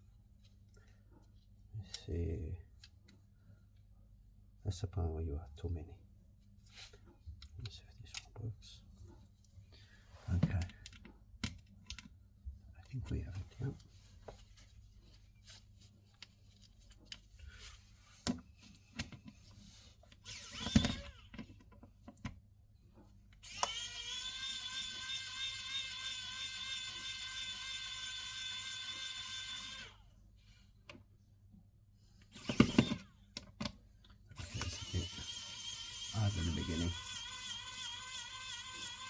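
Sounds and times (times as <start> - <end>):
electric screwdriver whining: 20.2 - 21.5, 23.4 - 30.0, 32.3 - 33.3, 34.4 - 39.0.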